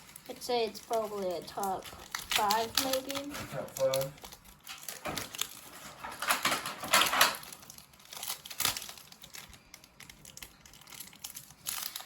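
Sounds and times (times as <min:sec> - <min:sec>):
foil wrapper crinkling: 0:00.0 - 0:12.0.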